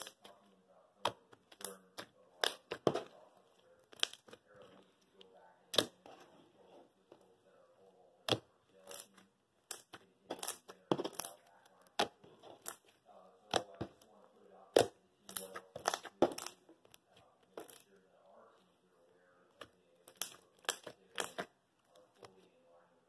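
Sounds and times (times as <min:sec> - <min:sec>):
crunchy slime crackling: 0:03.8 - 0:04.9, 0:08.2 - 0:17.9, 0:19.5 - 0:22.3.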